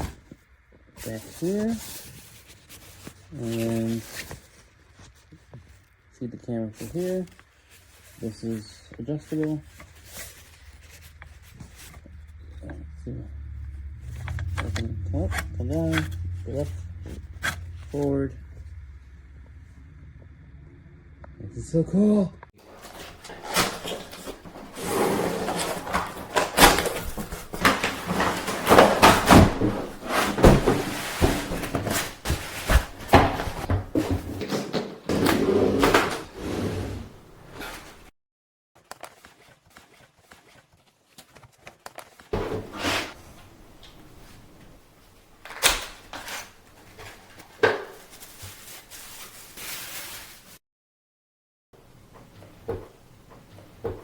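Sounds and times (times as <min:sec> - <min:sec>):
rubbing and scraping: 0:06.8 - 0:12.9, 0:13.9 - 0:18.8, 0:22.6 - 0:38.1, 0:39.0 - 0:50.6.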